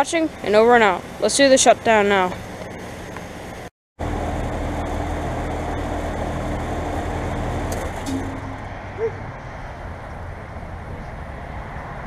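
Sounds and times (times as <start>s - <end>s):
fainter hum: 0.0s - 9.1s
heat pump humming: 0.0s - 9.1s.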